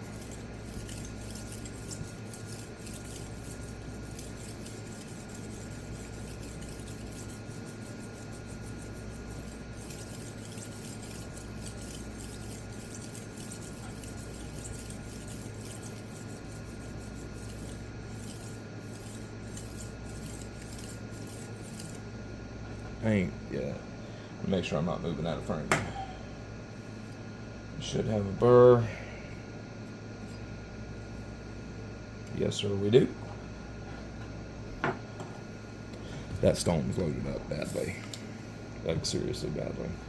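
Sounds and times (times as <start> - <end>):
knife scraping on sharpening stone: 0.1 - 22.0.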